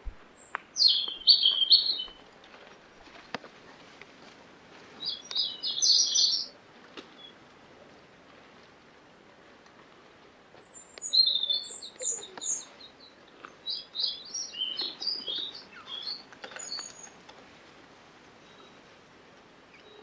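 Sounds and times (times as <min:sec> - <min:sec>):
birds chirping: 0:00.0 - 0:02.6, 0:05.0 - 0:06.6, 0:10.6 - 0:17.2.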